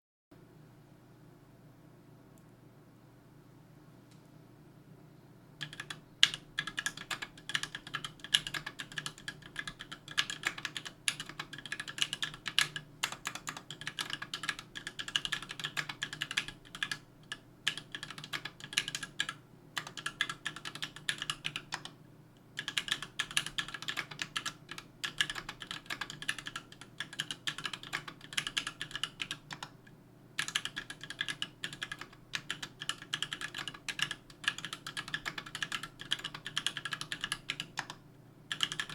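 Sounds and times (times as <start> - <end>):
mechanical keyboard typing: 5.6 - 22.0, 22.6 - 29.7, 30.4 - 38.9.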